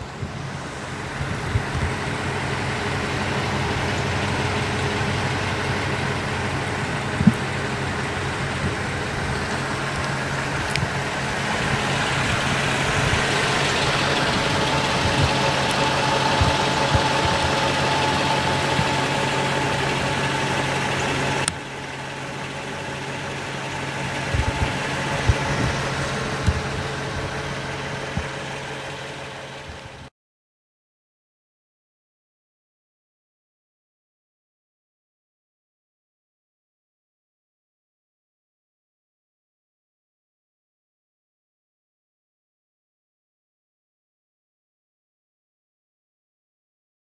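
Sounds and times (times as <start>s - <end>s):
vehicle engine humming: 0.0s - 30.1s.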